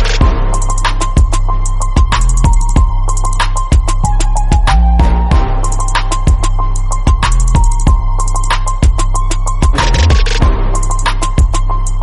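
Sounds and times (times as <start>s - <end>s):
electronic hip-hop beat: 0.0s - 12.0s.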